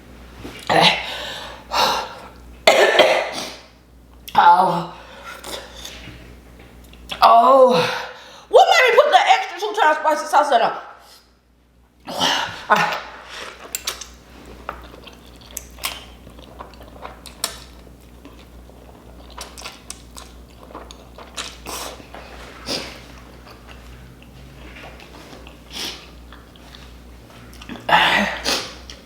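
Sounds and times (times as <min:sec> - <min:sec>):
person chewing noodles: 0:12.8 - 0:29.0.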